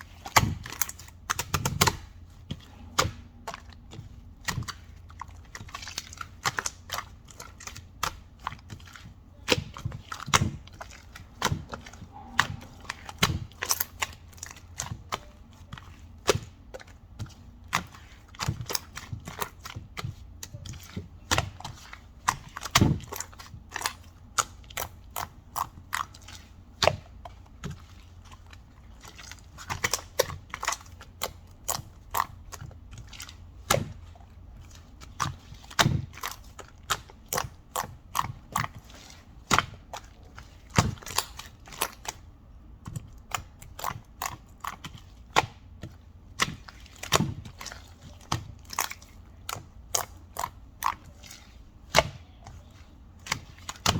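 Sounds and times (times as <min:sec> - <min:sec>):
low steady hum: 0:00.0 - 0:53.9.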